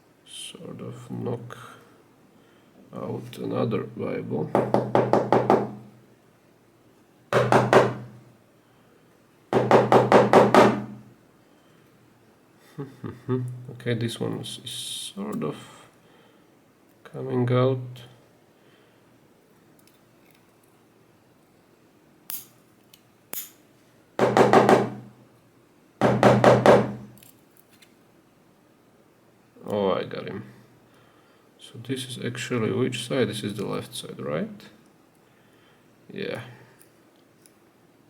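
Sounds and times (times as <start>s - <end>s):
hammer striking a lock: 4.6s - 5.9s, 7.4s - 8.2s, 9.6s - 11.0s, 24.2s - 25.0s, 26.0s - 27.2s
sharp knocks on a lock: 7.4s - 8.2s.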